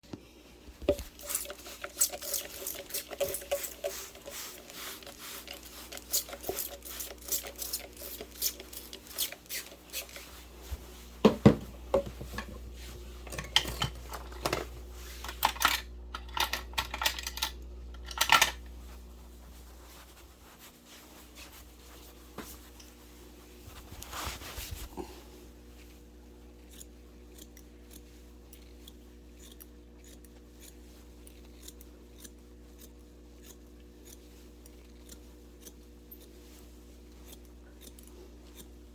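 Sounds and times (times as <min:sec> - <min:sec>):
scissors snipping hair: 0:01.2 - 0:10.3, 0:26.5 - 0:38.9.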